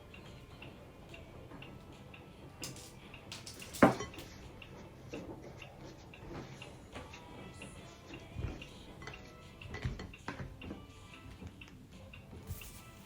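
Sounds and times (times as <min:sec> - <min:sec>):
dishware clattering on a counter: 0:02.7 - 0:04.3, 0:09.0 - 0:10.5.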